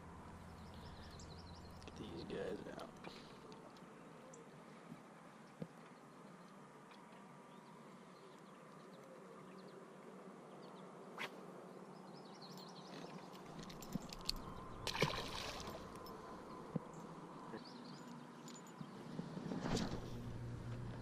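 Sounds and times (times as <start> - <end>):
faint steady hum: 0.0 - 12.7.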